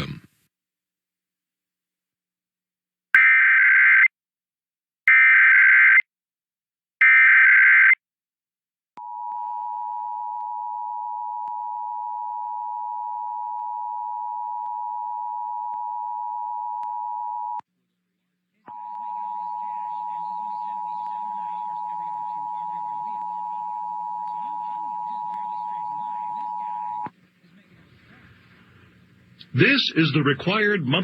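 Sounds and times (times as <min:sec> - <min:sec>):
data tone bursts: 0:18.7 - 0:27.1
two-tone attention signal: 0:18.7 - 0:27.1.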